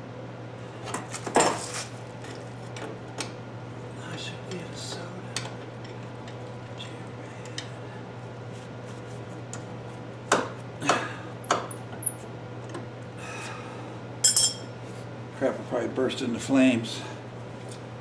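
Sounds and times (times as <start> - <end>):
steady low hum: 2.0 - 18.0
metal tools clinking: 14.3 - 14.7.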